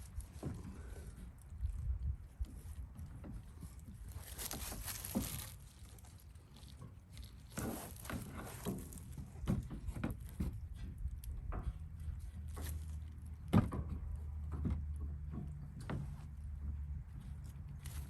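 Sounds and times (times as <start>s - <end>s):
rustling: 2.4s - 10.4s.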